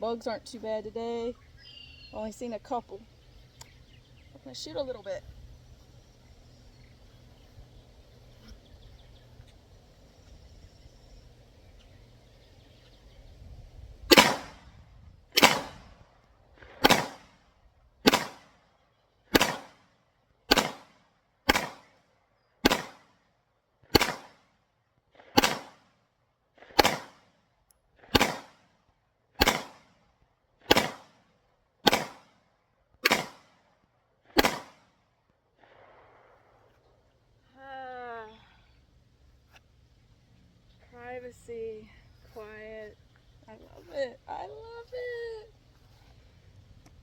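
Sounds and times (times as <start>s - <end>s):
gunshots: 14.1s - 14.7s, 15.4s - 15.9s, 16.6s - 17.4s, 18.0s - 18.6s, 19.3s - 19.8s, 20.5s - 21.9s, 22.6s - 23.1s, 23.9s - 24.4s, 25.2s - 25.8s, 26.6s - 27.3s, 28.0s - 28.6s, 29.4s - 29.9s, 30.6s - 31.2s, 31.8s - 32.3s, 33.0s - 33.6s, 34.3s - 34.8s.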